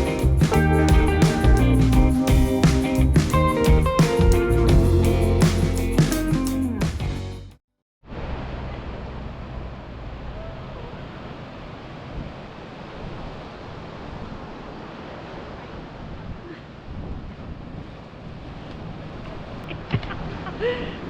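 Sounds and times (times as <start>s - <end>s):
guitar music: 0.0s - 7.5s
wind noise on microphone: 15.9s - 19.2s.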